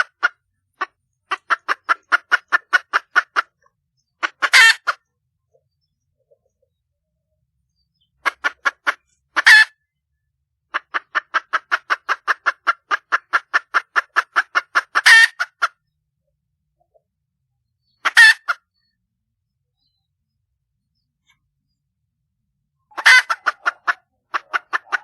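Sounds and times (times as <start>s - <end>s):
hen clucking: 0.0s - 6.8s, 7.7s - 9.9s, 10.6s - 15.9s, 16.8s - 17.2s, 17.8s - 19.0s, 22.8s - 25.0s
hen squawking: 4.2s - 5.0s, 18.0s - 18.6s, 22.9s - 25.0s.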